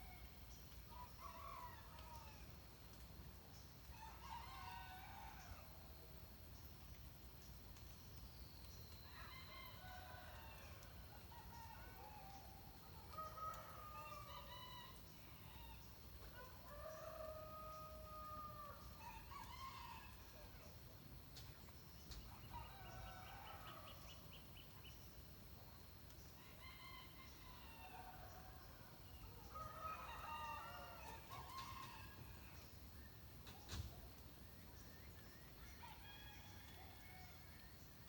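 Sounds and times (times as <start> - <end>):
low steady background noise: 0.0 - 38.0
faint rooster crowing: 9.0 - 20.8, 26.4 - 32.7, 35.6 - 37.8.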